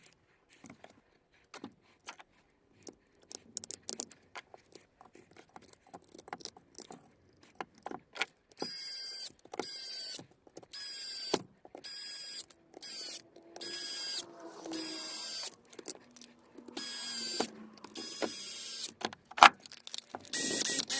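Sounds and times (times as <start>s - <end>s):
impact driver motor whine: 10.9s - 19.0s, 20.3s - 20.9s.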